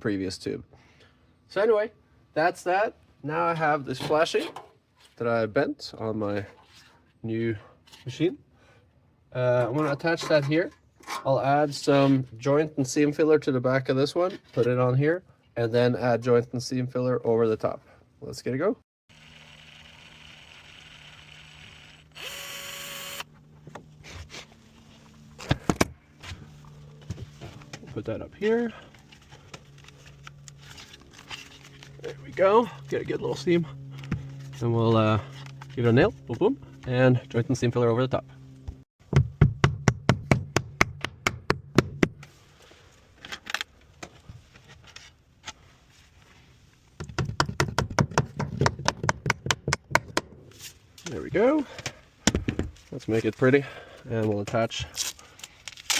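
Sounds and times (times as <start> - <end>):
small electric motor whirring: 19.1 - 23.4.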